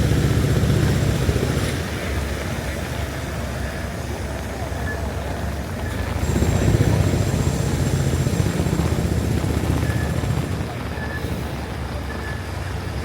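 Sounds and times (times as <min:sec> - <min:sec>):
deep engine rumble: 0:00.0 - 0:13.0
street traffic noise: 0:00.0 - 0:13.0.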